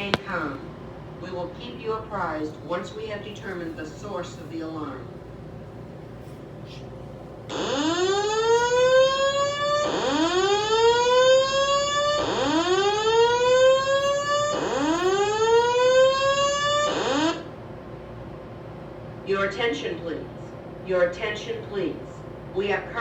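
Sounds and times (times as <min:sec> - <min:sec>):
fire alarm whoop tone: 0:07.5 - 0:17.5.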